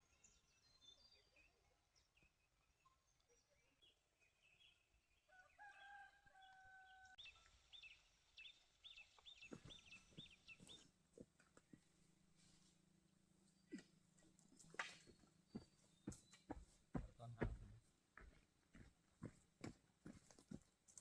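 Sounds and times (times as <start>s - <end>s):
rooster crowing: 5.3s - 7.2s
small bird chirping: 7.2s - 10.9s.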